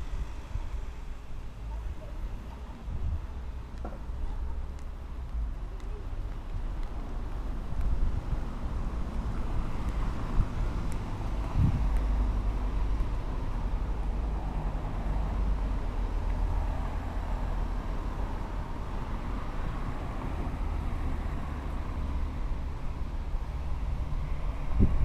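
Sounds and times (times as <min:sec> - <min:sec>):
steady low rumble: 0:00.0 - 0:25.0.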